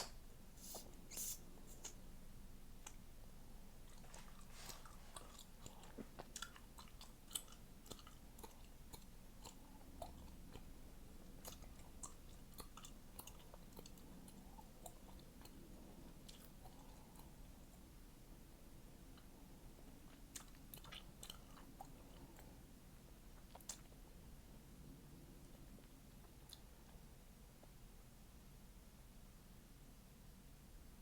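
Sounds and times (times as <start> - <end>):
gum chewing wet clicks: 3.8 - 17.8, 19.1 - 22.6, 23.3 - 24.0.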